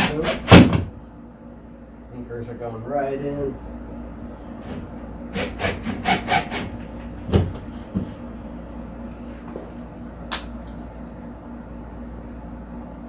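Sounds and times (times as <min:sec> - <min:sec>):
steady low hum: 0:00.0 - 0:13.0
dull knocks: 0:07.3 - 0:08.2.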